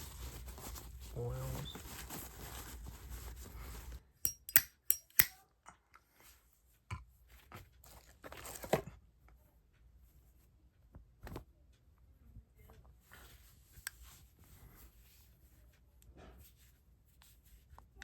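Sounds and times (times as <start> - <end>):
sharp metallic clicks: 4.3 - 5.4
soft clicks of lighter handling: 4.3 - 5.4.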